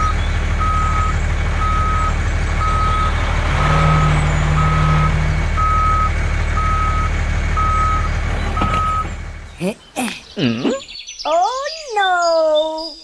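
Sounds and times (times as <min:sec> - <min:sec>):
truck reversing alarm beeping: 0:00.0 - 0:09.4
low engine drone: 0:00.0 - 0:09.6.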